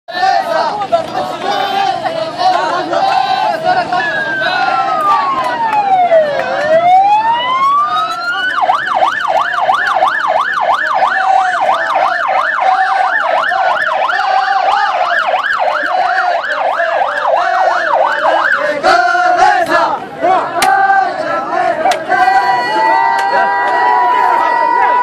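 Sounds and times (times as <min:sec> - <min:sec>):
sirens wailing: 0:00.2 - 0:25.0
siren yelping warble: 0:03.9 - 0:18.8.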